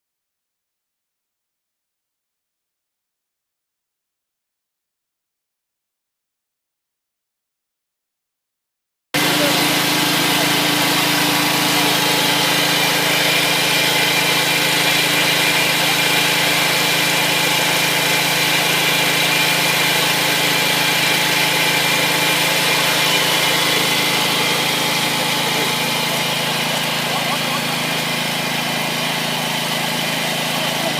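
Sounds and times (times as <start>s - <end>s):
cultivator engine running: 9.2s - 30.9s.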